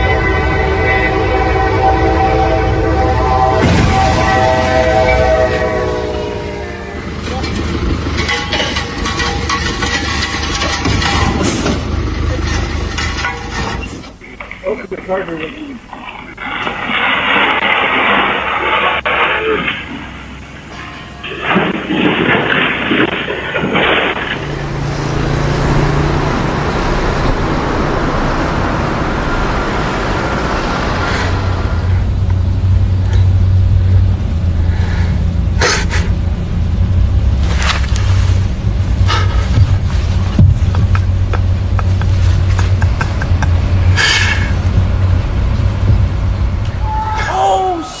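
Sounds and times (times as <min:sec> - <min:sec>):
steady rushing noise: 0:00.0 - 0:13.8, 0:16.7 - 0:46.8
vehicle engine humming: 0:00.0 - 0:47.3
sharp knocks: 0:39.5 - 0:43.6.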